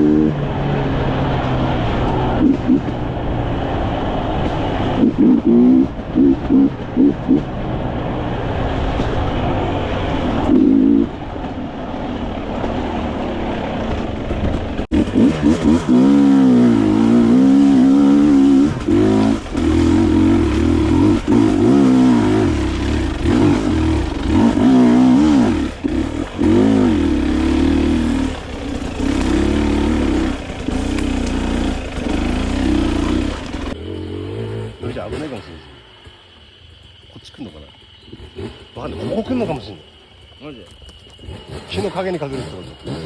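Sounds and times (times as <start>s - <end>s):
dirt bike engine revving: 0.0s - 36.4s, 37.8s - 40.1s, 40.8s - 43.0s.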